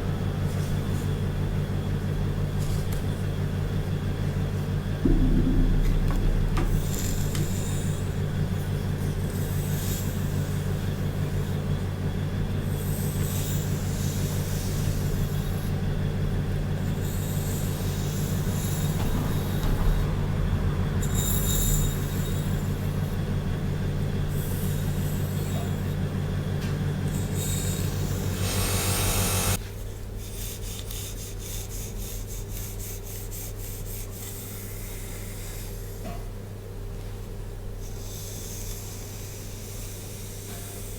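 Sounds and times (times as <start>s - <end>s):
low hum: 5.0s - 9.6s.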